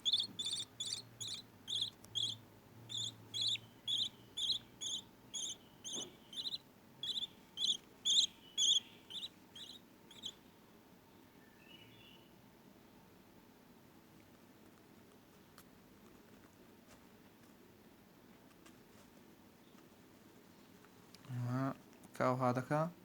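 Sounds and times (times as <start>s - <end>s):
chicks chirping: 0.0s - 10.4s.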